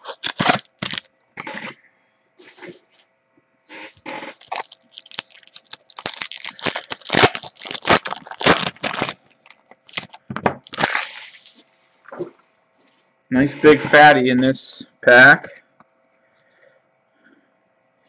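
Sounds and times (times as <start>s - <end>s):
wrapper crinkling and tearing: 0.0s - 1.1s, 4.2s - 11.6s.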